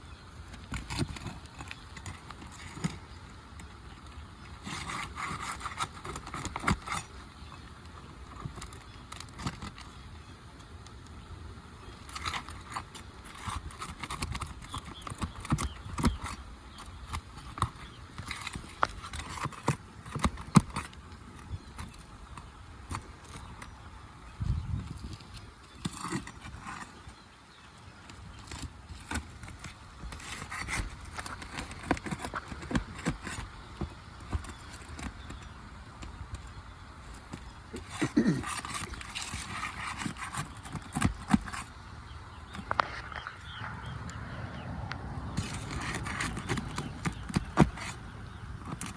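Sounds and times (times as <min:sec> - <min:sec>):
metal tool scraping shingles: 0:37.2 - 0:41.7, 0:45.4 - 0:48.9.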